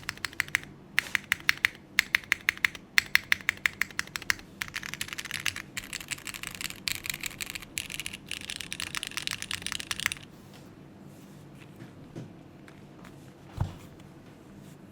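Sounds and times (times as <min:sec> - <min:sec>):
mechanical keyboard typing: 0:00.0 - 0:10.3.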